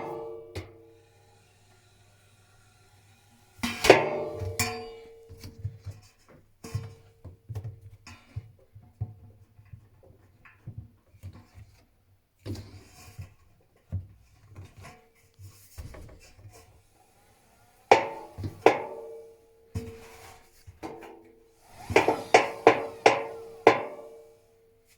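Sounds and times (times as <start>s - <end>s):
knocking inside washing machine: 3.9s - 4.7s, 17.9s - 19.3s, 21.7s - 24.3s
washing machine running: 16.8s - 19.5s, 21.5s - 24.6s.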